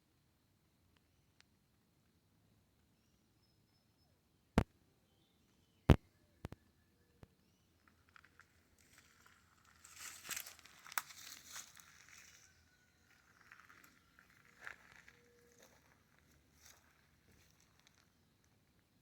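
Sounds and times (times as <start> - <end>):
crinkly rustling and scratching: 7.8 - 18.2.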